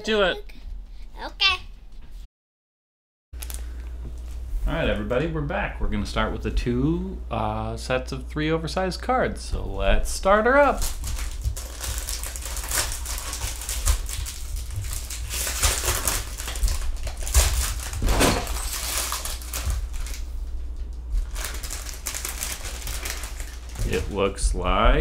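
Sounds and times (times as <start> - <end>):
packaging crinkling and rustling: 3.4 - 3.8, 10.6 - 24.4.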